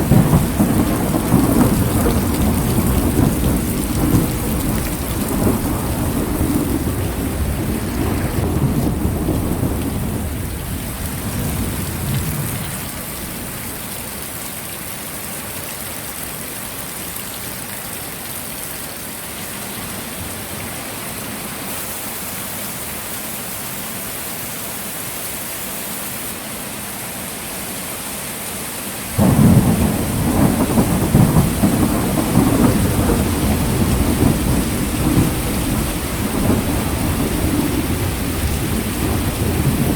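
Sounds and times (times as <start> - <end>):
loud thunder clap: 0.0 - 13.0, 29.2 - 39.9
thunder rumbling: 0.0 - 13.9, 29.1 - 39.9
heavy rain falling: 0.0 - 39.9.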